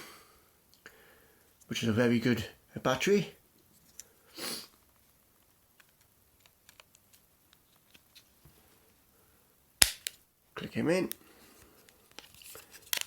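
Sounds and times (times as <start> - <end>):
battery snapping into phone: 9.8 - 10.2.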